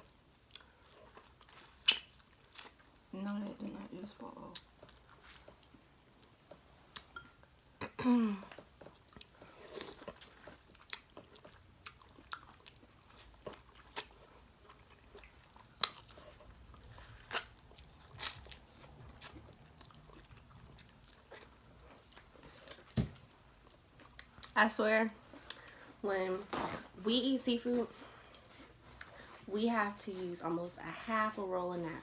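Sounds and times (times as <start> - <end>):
chewing and lip smacks: 0.3 - 3.0, 4.5 - 7.4, 8.5 - 24.6.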